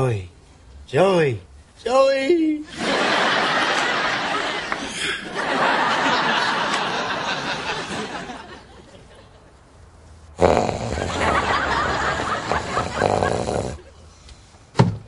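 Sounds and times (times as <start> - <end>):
studio audience laughing: 2.7 - 9.5, 11.0 - 13.8.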